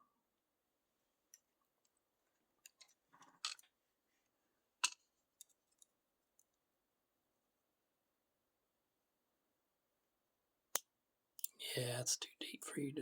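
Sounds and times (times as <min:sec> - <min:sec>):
small clicks of lock parts: 0:02.6 - 0:03.7.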